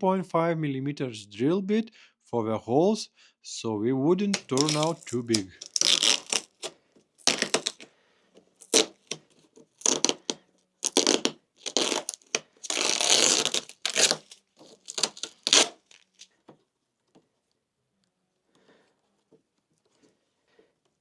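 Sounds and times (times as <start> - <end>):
zip ties being pulled tight: 4.4 - 7.9, 8.6 - 9.2, 9.8 - 16.2.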